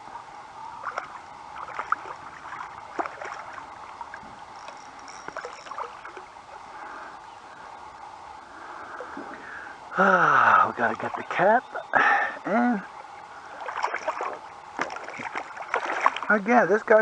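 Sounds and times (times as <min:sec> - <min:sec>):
river water rushing: 0:00.8 - 0:06.6, 0:13.3 - 0:16.3
water splashing around kayak: 0:00.8 - 0:06.7, 0:13.1 - 0:16.4.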